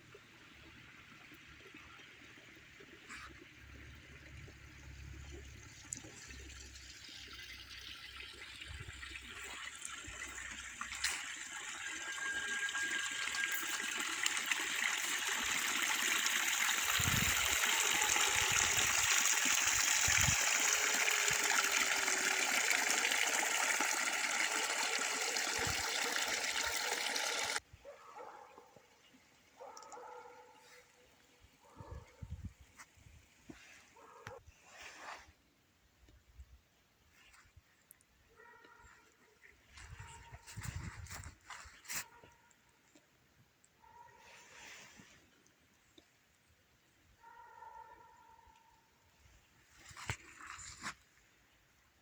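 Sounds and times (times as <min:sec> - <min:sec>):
running water rushing: 0:05.0 - 0:27.6.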